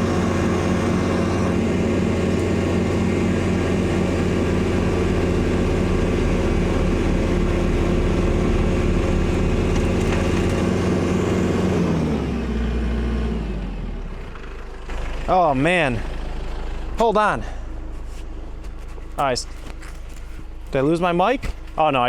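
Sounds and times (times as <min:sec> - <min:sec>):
tractor diesel engine under load: 0:00.0 - 0:22.0.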